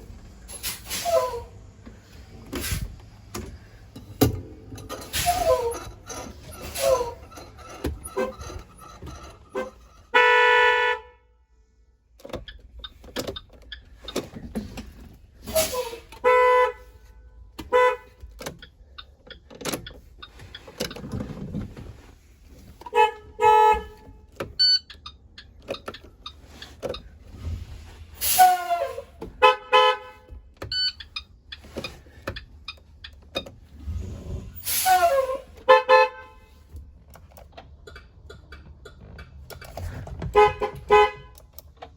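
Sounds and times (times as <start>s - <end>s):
bus electric horn honks: 6.6s - 8.7s, 9.4s - 11.3s, 15.6s - 18.3s, 22.8s - 24.4s, 28.2s - 30.9s, 34.6s - 36.7s, 40.2s - 41.6s.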